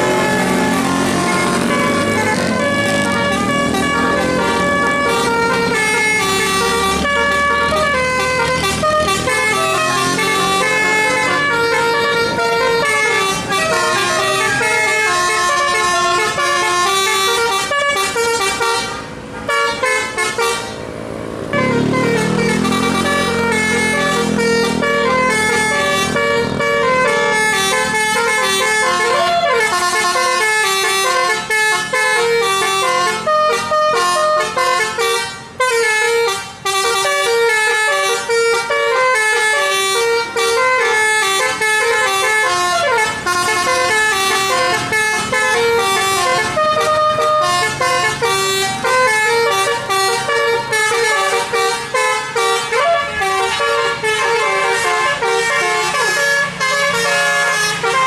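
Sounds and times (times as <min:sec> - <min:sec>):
musical bus air horn melody: 0:00.0 - 0:58.0.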